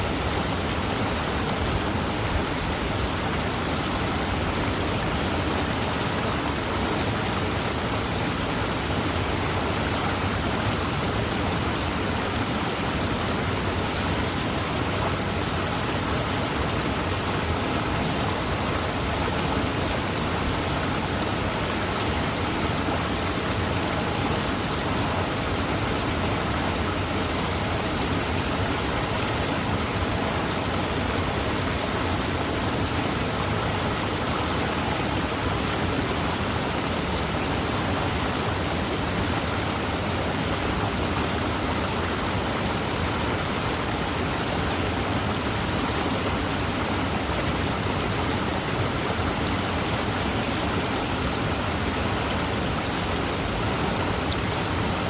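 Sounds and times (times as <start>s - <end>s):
river water rushing: 0.0s - 55.0s.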